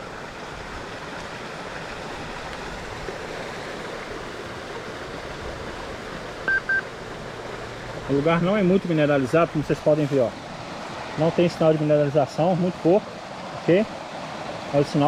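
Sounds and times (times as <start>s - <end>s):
metal detector beep: 6.5s - 6.8s.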